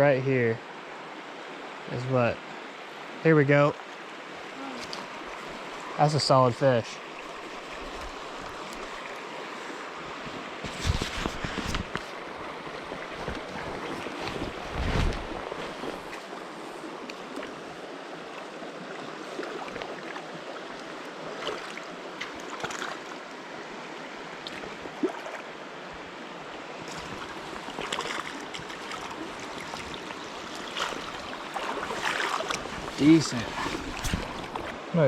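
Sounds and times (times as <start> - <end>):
flowing stream: 0.0 - 35.0
sharp knocks or splashes: 26.9 - 34.7.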